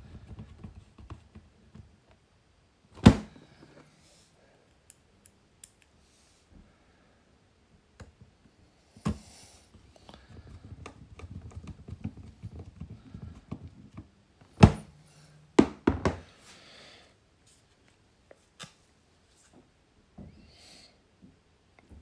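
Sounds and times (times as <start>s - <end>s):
plastic parts knocking: 3.0s - 3.4s, 10.2s - 14.9s, 15.6s - 16.3s.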